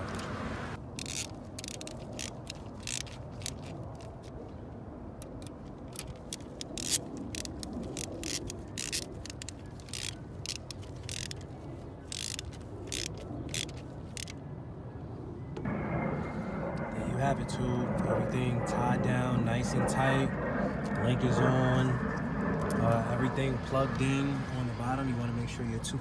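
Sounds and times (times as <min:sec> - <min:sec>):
ratchet wrench clicking: 0:01.0 - 0:04.1, 0:05.2 - 0:11.5, 0:12.1 - 0:14.4.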